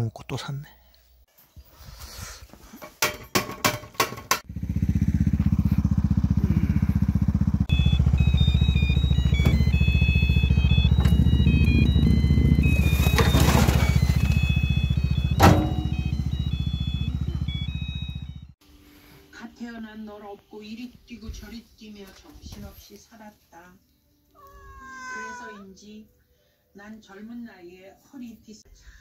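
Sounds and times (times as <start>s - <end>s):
motor humming: 4.7s - 18.6s
sharp knock: 15.4s - 15.9s.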